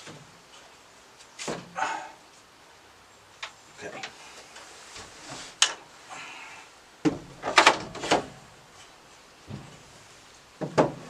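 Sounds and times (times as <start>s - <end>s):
wooden board knocking against wall: 10.6s - 11.0s.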